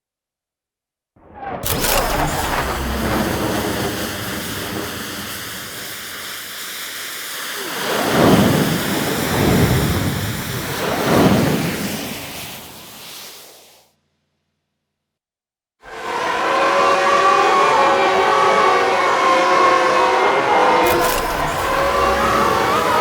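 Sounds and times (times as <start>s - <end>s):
noisy howling fly-by: 21.4s - 23.0s.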